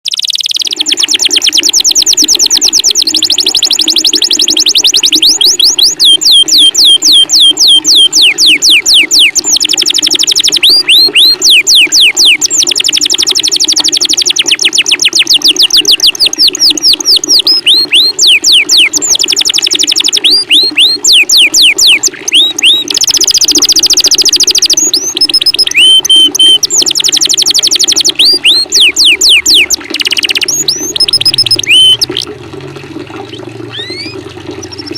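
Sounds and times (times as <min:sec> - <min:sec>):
songbird whistling calls: 0:00.1 - 0:32.2, 0:33.3 - 0:34.9
low water sound: 0:00.1 - 0:34.9.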